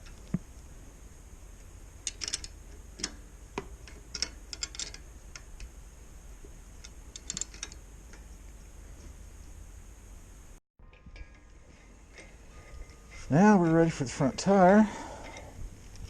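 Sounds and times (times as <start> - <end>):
tools and metal parts clinking: 2.0 - 3.2, 3.8 - 5.4, 6.8 - 8.3, 10.8 - 16.0
ratchet wrench clicking: 2.0 - 5.5, 6.8 - 7.8.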